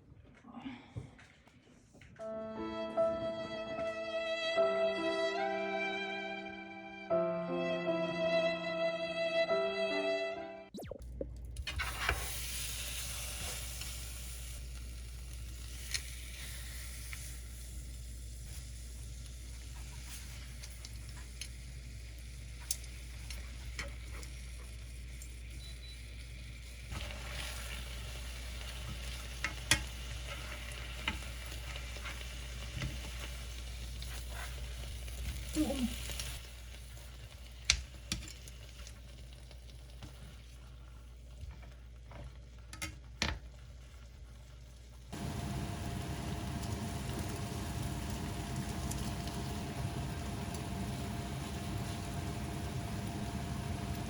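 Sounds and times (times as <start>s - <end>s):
food sizzling in a pan: 11.7s - 54.0s.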